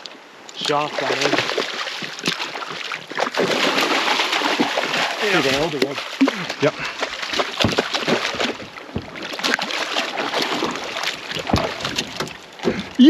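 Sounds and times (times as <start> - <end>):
water splashing and sloshing: 0.0 - 13.0
sharp knocks and clicks: 7.3 - 9.7, 10.4 - 13.0.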